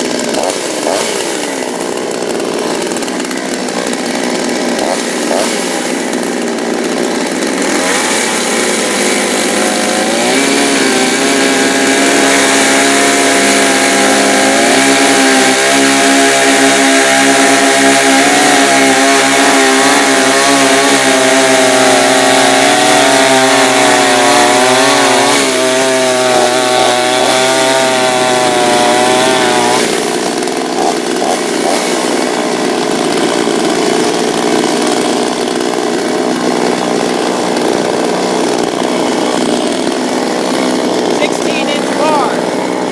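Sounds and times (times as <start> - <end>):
chainsaw cutting log: 0.0 - 42.9.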